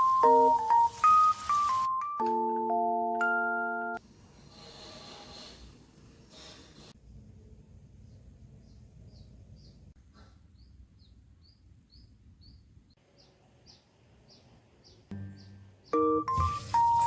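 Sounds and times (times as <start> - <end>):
faint bird chirping: 7.9 - 17.0.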